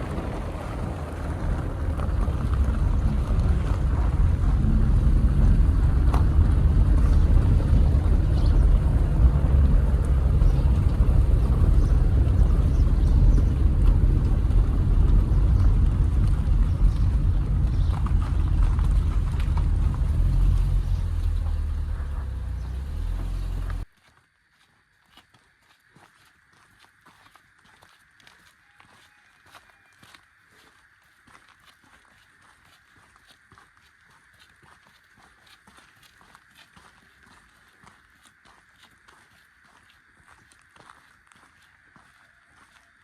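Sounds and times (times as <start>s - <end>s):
wind buffeting microphone: 0.0s - 23.8s.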